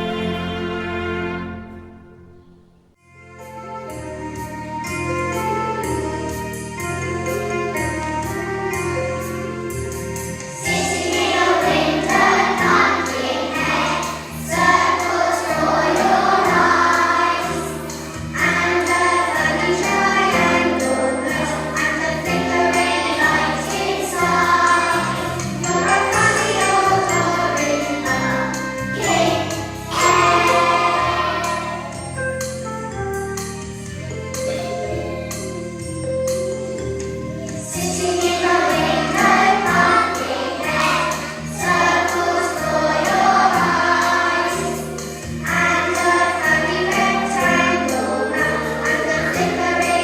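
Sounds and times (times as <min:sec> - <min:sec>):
choir singing: 0:00.0 - 0:02.6, 0:10.6 - 0:32.2, 0:37.4 - 0:50.0
instrumental accompaniment: 0:00.0 - 0:50.0.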